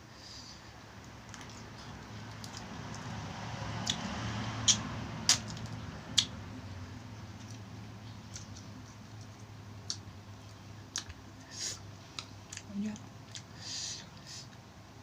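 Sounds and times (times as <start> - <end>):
low steady hum: 0.0 - 15.0
sharp eating clicks and cracks: 1.0 - 3.2, 3.8 - 6.4, 7.4 - 11.2, 12.1 - 13.6.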